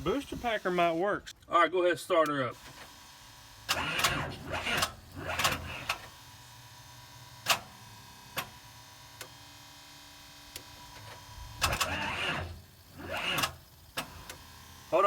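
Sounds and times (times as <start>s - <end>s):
starter cranking engine: 3.6s - 6.6s, 10.5s - 15.0s.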